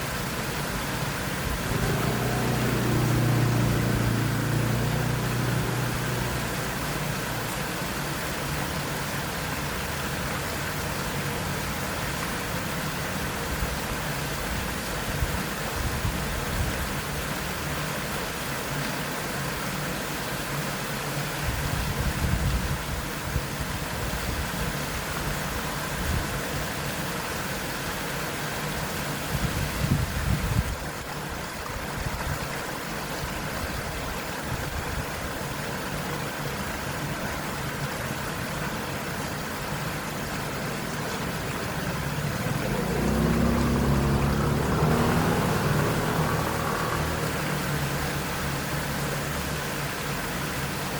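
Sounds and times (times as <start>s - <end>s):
waterfall rushing: 0.0s - 50.9s
motorcycle engines running: 0.4s - 7.8s, 40.6s - 50.4s.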